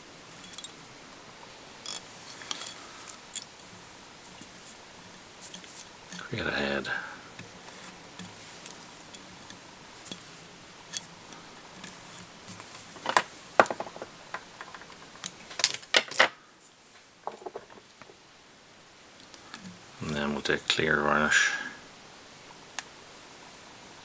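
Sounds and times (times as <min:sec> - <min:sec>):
light clicks of fly-tying tools: 0:01.8 - 0:03.7.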